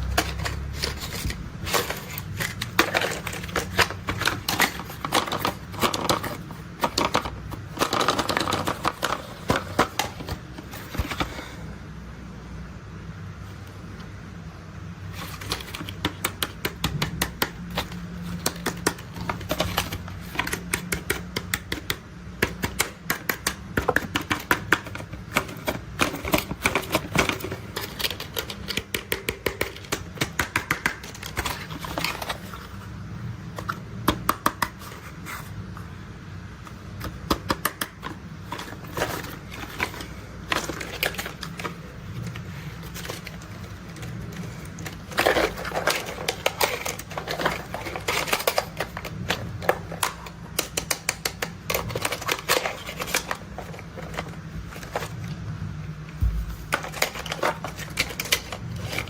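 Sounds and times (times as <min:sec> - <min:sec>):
plastic toys clicking and clattering: 0:00.0 - 0:11.4, 0:15.0 - 0:32.8, 0:36.9 - 0:55.2, 0:56.6 - 0:59.0
low steady hum: 0:31.1 - 0:59.0.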